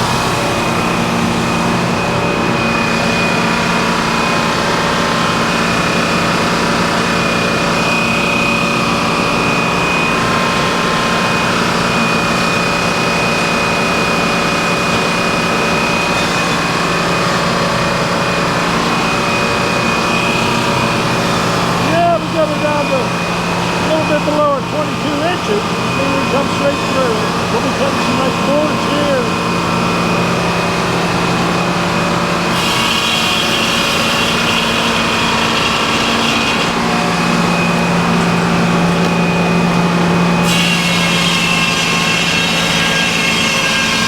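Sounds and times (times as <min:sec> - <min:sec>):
sawmill engine running: 0:00.0 - 0:44.0
high whine: 0:18.2 - 0:30.9.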